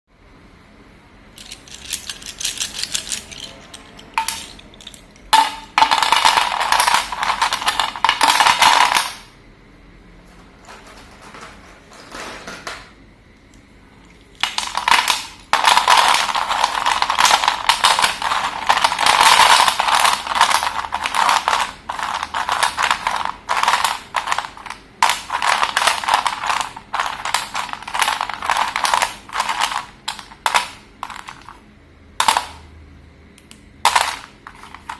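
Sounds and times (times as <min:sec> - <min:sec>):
slate pencils crunching: 0:01.4 - 0:09.2, 0:14.3 - 0:31.6, 0:33.9 - 0:34.9.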